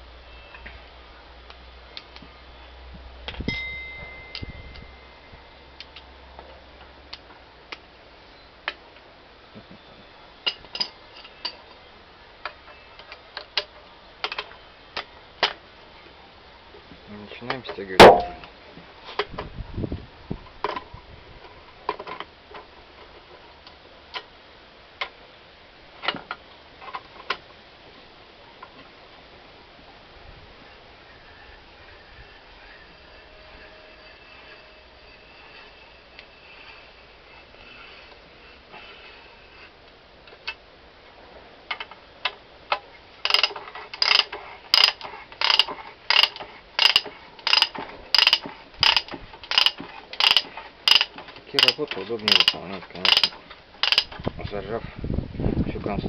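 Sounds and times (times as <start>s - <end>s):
spanner clicking on threaded rods: 42.7s - 54.2s.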